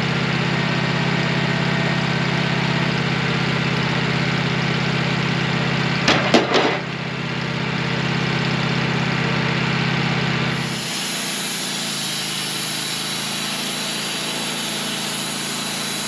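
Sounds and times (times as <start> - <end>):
engine idling: 0.0 - 16.0
sharp knocks: 6.0 - 6.9.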